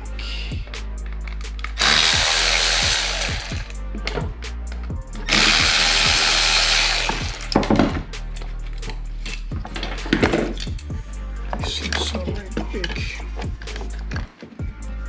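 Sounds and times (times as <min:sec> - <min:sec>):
handheld power tool running: 0:01.8 - 0:03.6, 0:05.3 - 0:07.4.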